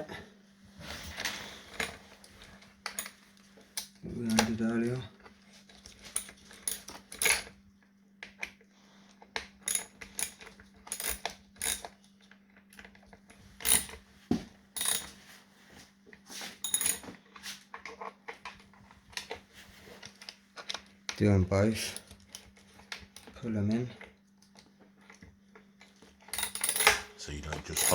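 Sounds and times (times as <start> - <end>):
metal tools clinking on bolts: 14.8 - 15.1, 16.6 - 17.2, 26.3 - 27.9.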